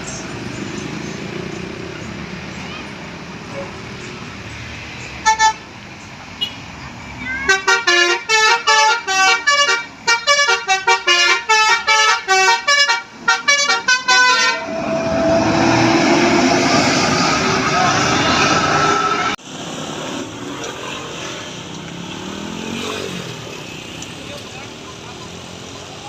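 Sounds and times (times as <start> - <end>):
musical air horn melody: 7.5 - 19.4
loud steady rushing noise: 13.8 - 20.5.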